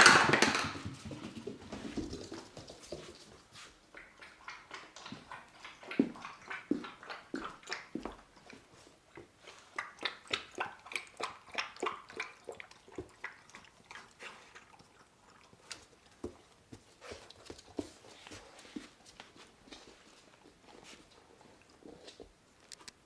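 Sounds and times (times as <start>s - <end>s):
puppy lapping water: 3.8s - 17.4s.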